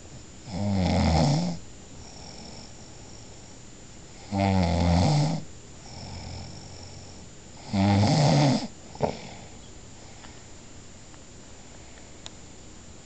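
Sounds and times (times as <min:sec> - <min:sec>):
loud rasping snoring: 0:00.5 - 0:02.7, 0:04.2 - 0:09.5.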